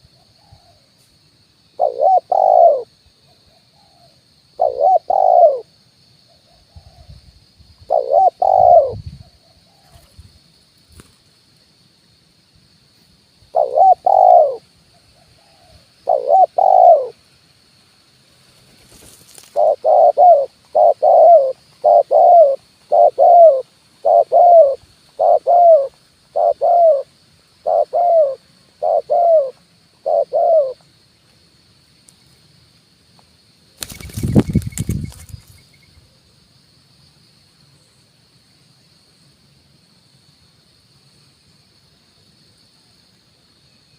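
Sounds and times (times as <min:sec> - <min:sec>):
dove cooing: 0:01.8 - 0:02.9, 0:03.5 - 0:05.7, 0:07.9 - 0:10.1, 0:13.5 - 0:17.2, 0:19.5 - 0:30.8.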